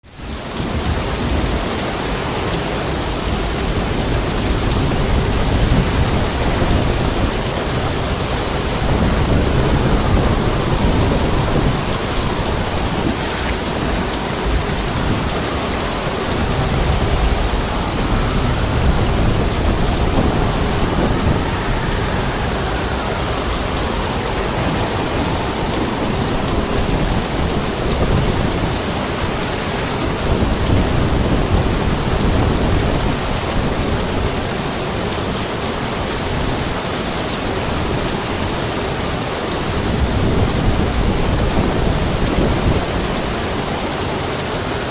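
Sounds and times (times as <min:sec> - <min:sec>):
heavy rain: 0:00.0 - 0:44.9
wind: 0:00.0 - 0:44.9
deep low rumbles: 0:05.7 - 0:28.9.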